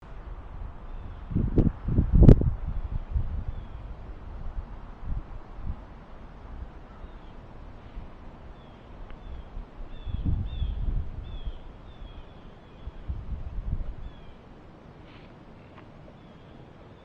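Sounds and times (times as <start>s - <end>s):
low rumbling noise: 0.0s - 16.9s
small bird chirping: 8.5s - 13.2s.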